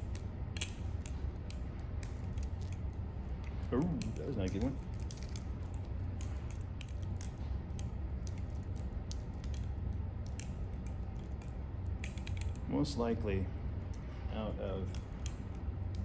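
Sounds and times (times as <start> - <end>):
butterfly knife clicking: 0.0 - 12.6
steady low hum: 0.0 - 16.0.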